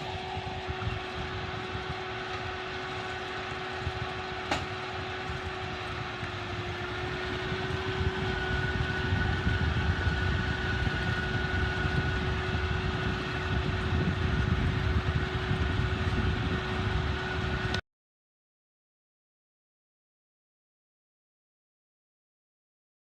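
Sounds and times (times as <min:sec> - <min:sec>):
farm machine engine rumbling: 0:00.0 - 0:17.8.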